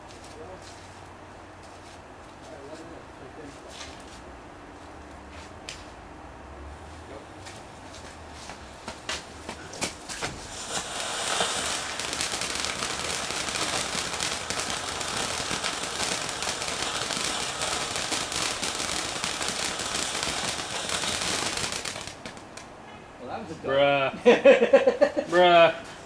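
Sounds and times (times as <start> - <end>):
firework crackling: 7.1 - 22.8.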